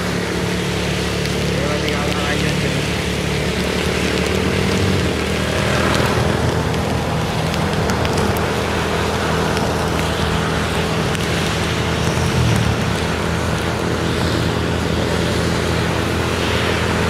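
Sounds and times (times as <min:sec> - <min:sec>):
low engine hum: 0:00.0 - 0:17.0
road and wind noise: 0:00.0 - 0:17.0.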